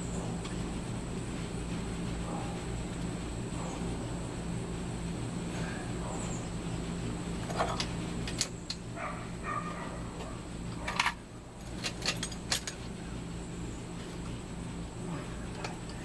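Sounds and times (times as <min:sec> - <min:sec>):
steady low hum: 0:00.0 - 0:16.0
metal chain clinking and rattling: 0:10.8 - 0:12.8.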